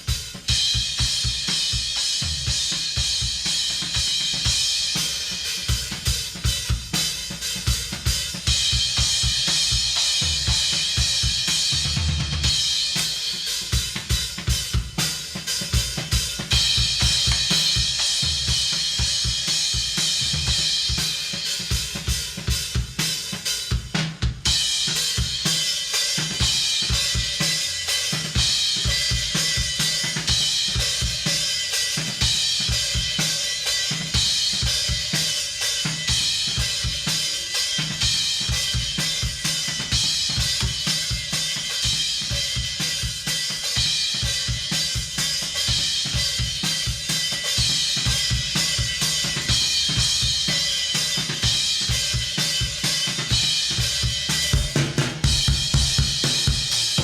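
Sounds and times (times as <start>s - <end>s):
cymbals and hi-hat: 0.0s - 57.0s
kick drum strokes: 53.3s - 57.0s.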